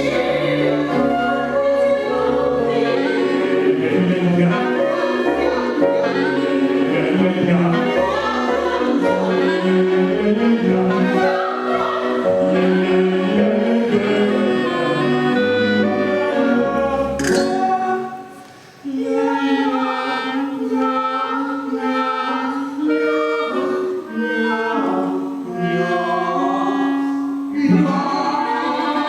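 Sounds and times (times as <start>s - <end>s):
instrumental accompaniment: 0.0s - 18.8s
person singing long notes: 0.0s - 29.0s.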